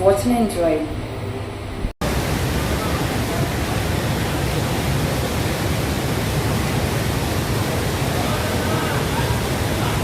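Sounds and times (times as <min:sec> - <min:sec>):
waterfall roaring: 0:02.0 - 0:10.0.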